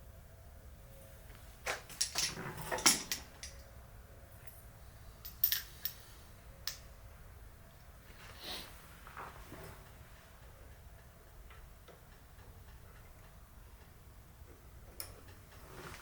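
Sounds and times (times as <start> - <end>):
metal tools clinking: 1.9 - 3.7, 5.2 - 6.0.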